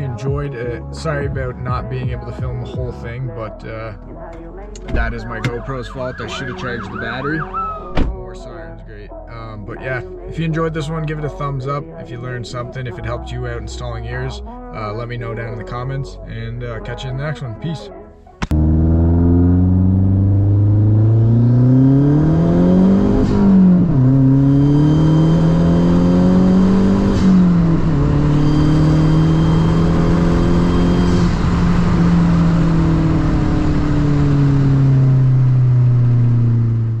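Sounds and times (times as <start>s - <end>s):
car engine accelerating: 18.4s - 37.0s.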